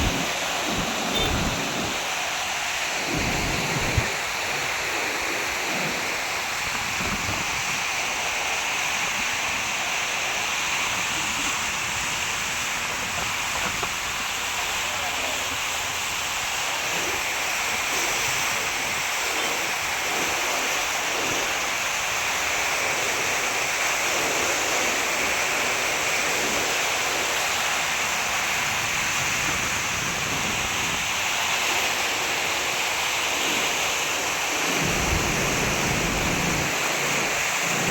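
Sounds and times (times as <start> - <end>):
river water rushing: 0.0 - 7.1, 31.1 - 37.9
low rumble: 34.8 - 36.8.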